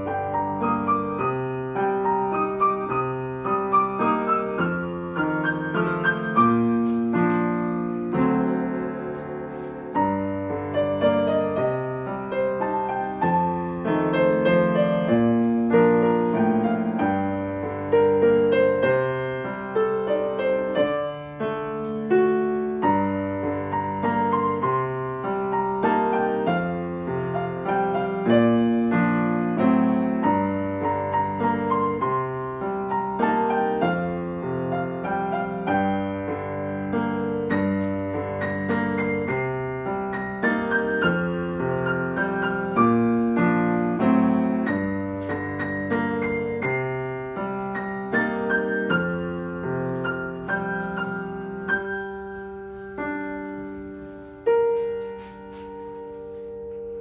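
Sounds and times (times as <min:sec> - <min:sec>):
piano music: 0:00.0 - 0:57.0.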